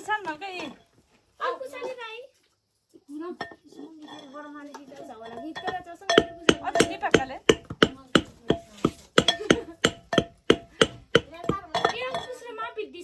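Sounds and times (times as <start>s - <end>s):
batter beaten by hand in vessel: 5.6s - 12.3s.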